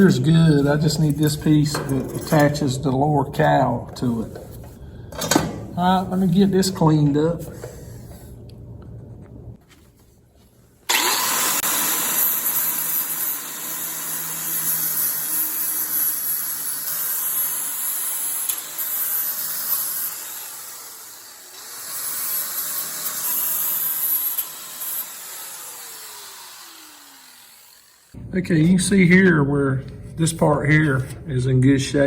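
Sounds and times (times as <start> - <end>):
power grinder grinding metal: 10.9 - 28.2.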